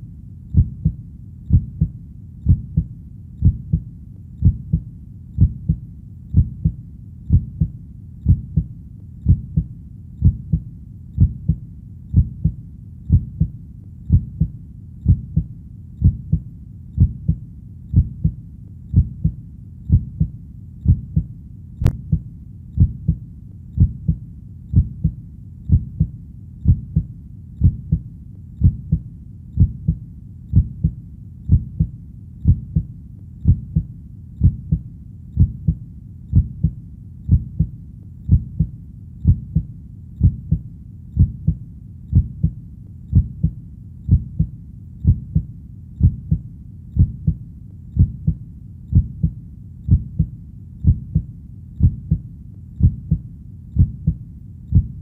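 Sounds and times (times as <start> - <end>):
heartbeat thumps: 0.0 - 55.0.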